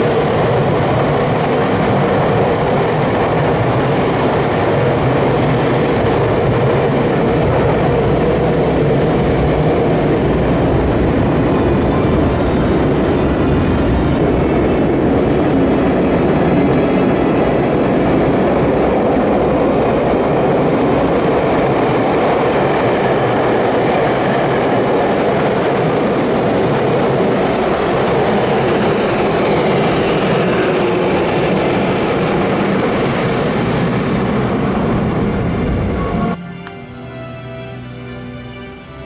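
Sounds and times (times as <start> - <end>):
train wheels rushing on rail: 0.0 - 36.4
music: 35.9 - 39.0.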